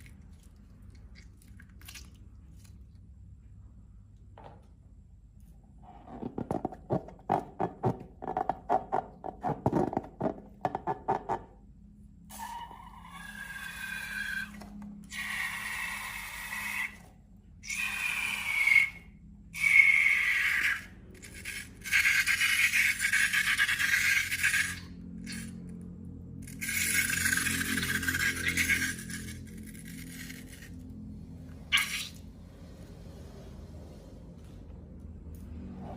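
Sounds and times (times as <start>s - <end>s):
squeaky slime scraping: 26.4s - 30.9s, 31.5s - 32.3s.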